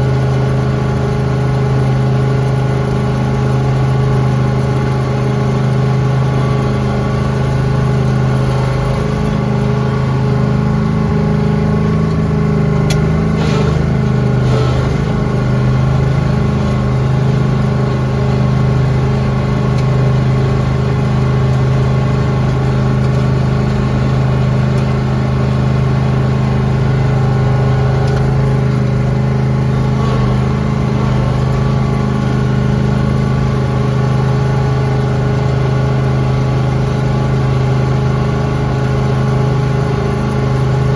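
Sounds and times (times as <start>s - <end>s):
lawn tractor engine running: 0.0s - 40.9s.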